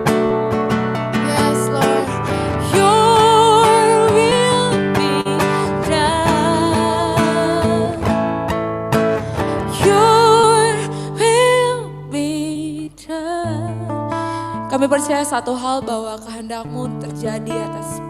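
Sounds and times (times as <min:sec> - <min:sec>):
strummed acoustic guitar: 0:00.0 - 0:12.4, 0:13.4 - 0:18.0.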